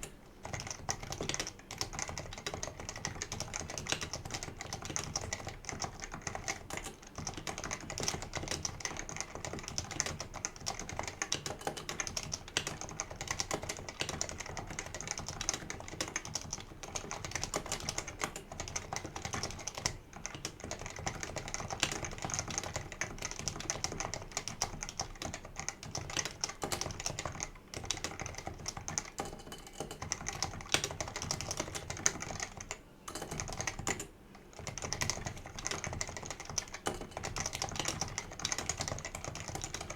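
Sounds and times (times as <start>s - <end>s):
fast keyboard typing: 0.0s - 39.9s.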